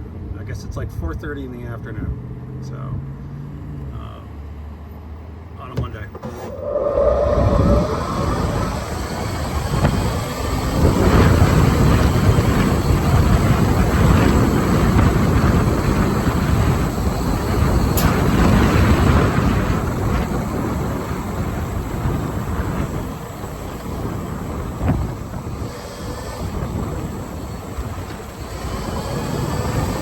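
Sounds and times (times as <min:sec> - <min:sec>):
wind buffeting microphone: 0:06.1 - 0:30.0.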